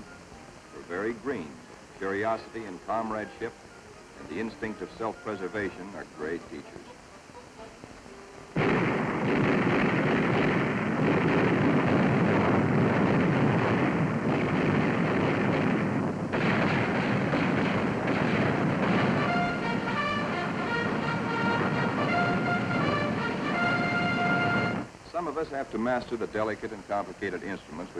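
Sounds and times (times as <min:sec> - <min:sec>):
ship's guns firing: 0:08.6 - 0:24.8.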